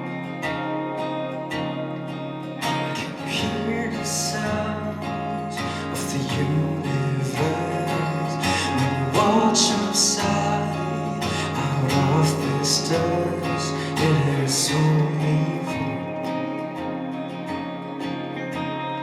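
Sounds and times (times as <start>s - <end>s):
acoustic guitar strumming: 0.0s - 19.0s
person singing: 2.6s - 17.2s.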